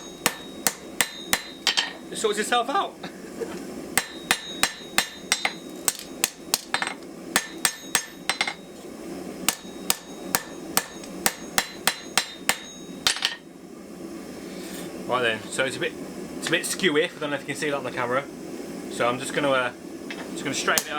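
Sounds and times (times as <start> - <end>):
hammer striking steel on anvil: 0.0 - 2.1, 4.0 - 8.8, 9.4 - 13.4.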